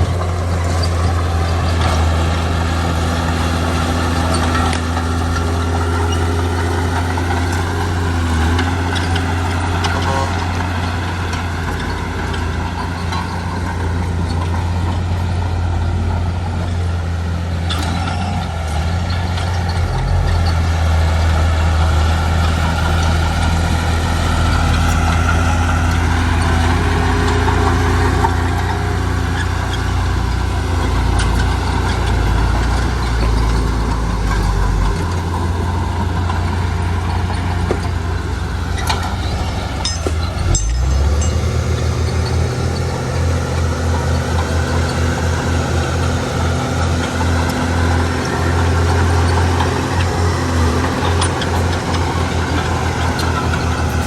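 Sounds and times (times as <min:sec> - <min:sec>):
heavy diesel engine running: 0:00.0 - 0:54.0.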